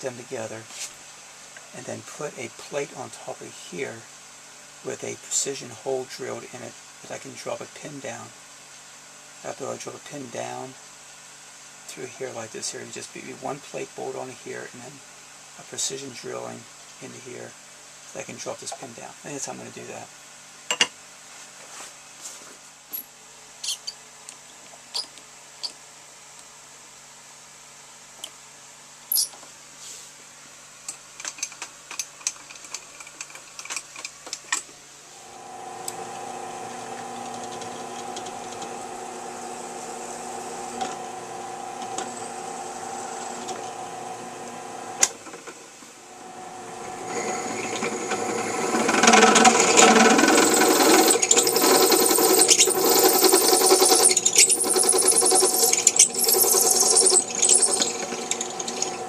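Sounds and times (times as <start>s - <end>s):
machine tool motor humming: 35.2s - 45.1s, 46.1s - 59.0s
tool cutting into steel: 47.1s - 59.0s.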